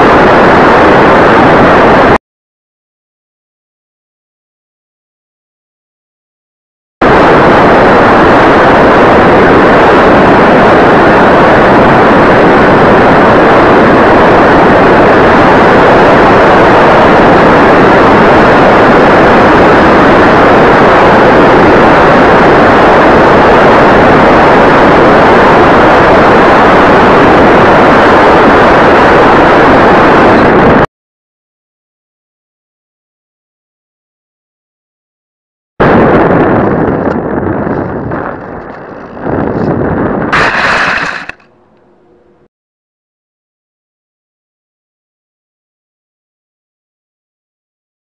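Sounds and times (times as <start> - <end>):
wind and propeller rushing: 0.0 - 2.2, 7.0 - 30.9, 35.8 - 42.4.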